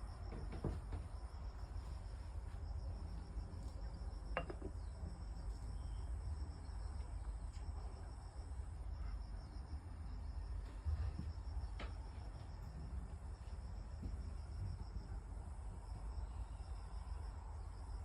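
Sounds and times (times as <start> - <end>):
insects chirping: 0.0 - 18.0
light knock: 4.4 - 4.8.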